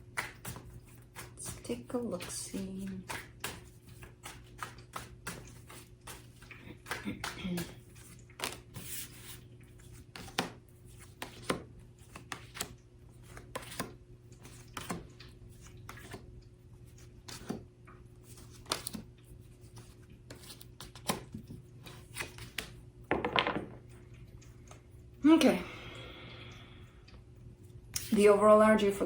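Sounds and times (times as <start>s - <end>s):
cards rustling: 3.5s - 16.2s, 18.2s - 23.6s
cards tapping on a table: 10.2s - 10.6s, 22.4s - 23.8s.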